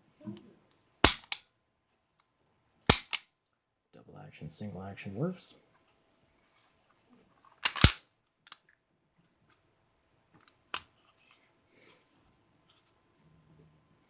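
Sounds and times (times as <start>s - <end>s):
pistol hammer and trigger clicking: 1.0s - 1.4s, 2.9s - 3.3s, 7.6s - 8.6s.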